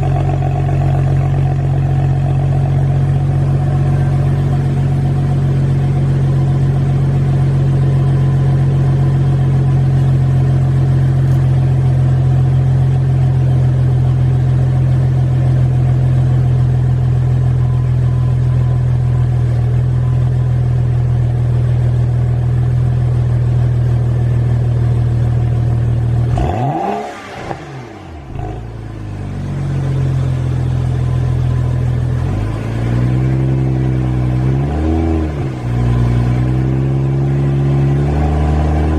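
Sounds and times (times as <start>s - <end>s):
engine revving: 26.2s - 28.9s, 29.9s - 38.9s.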